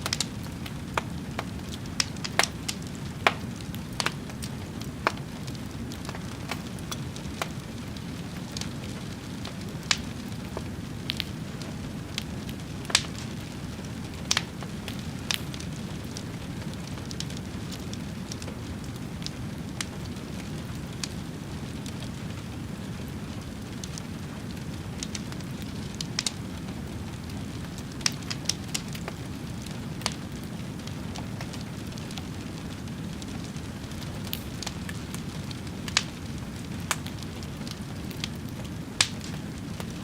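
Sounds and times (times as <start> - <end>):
fire crackling and popping: 0.0 - 40.0
low rumble of fire: 0.0 - 40.0.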